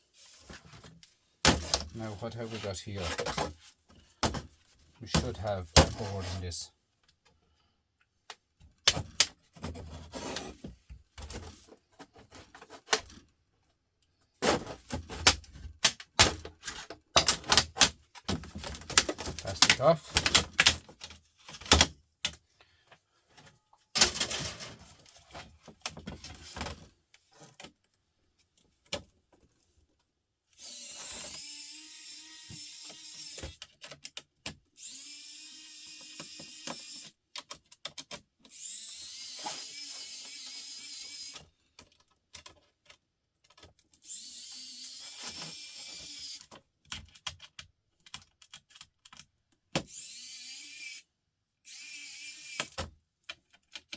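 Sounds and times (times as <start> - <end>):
clattering of parts being handled: 0.3 - 6.6, 14.4 - 29.8
electric screwdriver whirring: 30.6 - 33.6, 34.8 - 37.2, 38.5 - 41.4, 44.0 - 46.5, 49.9 - 51.0, 51.7 - 52.8.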